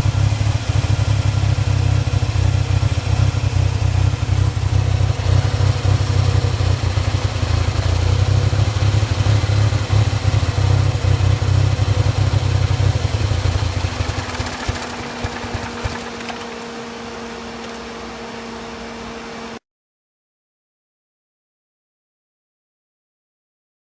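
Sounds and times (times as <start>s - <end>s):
engine rough sputtering idle: 0.0s - 17.9s.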